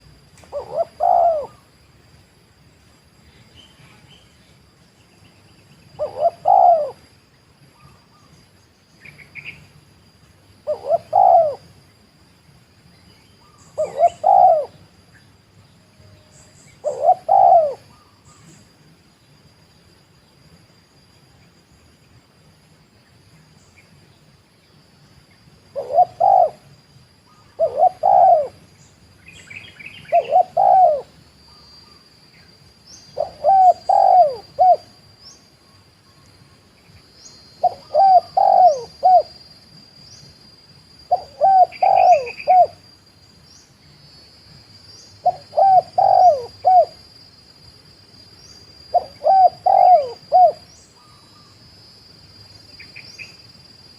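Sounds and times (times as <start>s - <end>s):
small birds chirping: 0.0s - 2.0s, 3.2s - 19.6s, 22.9s - 53.7s
dove cooing: 0.4s - 1.7s, 6.0s - 7.0s, 10.6s - 11.8s, 13.4s - 14.9s, 16.2s - 18.6s, 25.7s - 28.7s, 29.5s - 31.6s, 33.1s - 35.0s, 37.6s - 39.4s, 41.1s - 42.8s, 45.2s - 47.0s, 48.9s - 51.5s.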